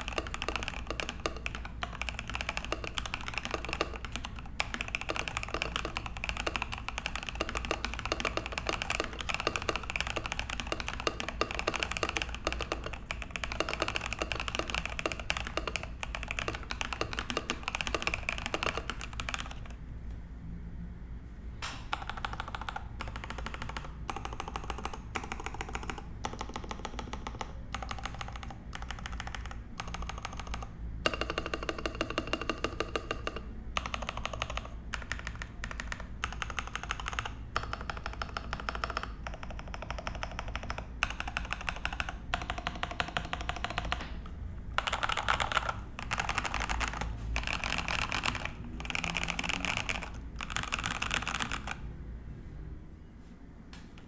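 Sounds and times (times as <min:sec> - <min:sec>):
mechanical keyboard key clacks: 0:00.0 - 0:19.7.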